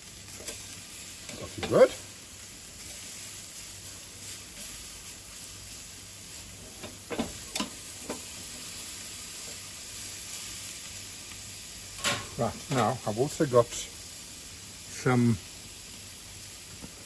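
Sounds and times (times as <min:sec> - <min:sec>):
steak sizzling on grate: 0:00.0 - 0:17.0.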